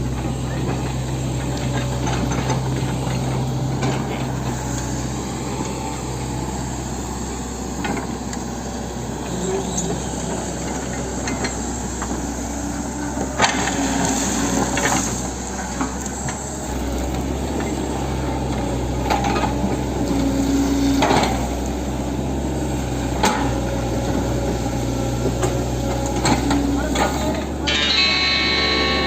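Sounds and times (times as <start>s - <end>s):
excavator diesel engine running: 0.0s - 29.0s.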